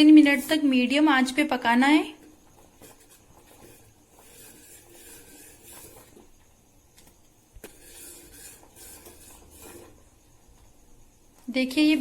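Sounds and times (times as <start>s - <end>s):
spoon scraping pot bottom: 2.2s - 10.2s.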